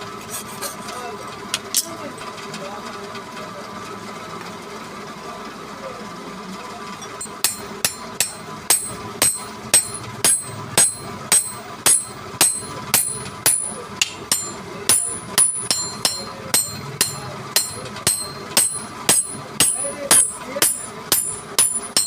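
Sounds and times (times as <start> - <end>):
hammer striking metal: 7.2 - 22.0.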